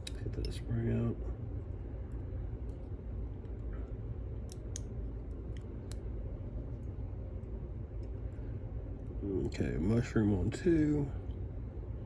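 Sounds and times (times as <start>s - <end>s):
steady low hum: 0.0s - 12.0s
small metallic clicks of tweezers: 4.4s - 4.9s.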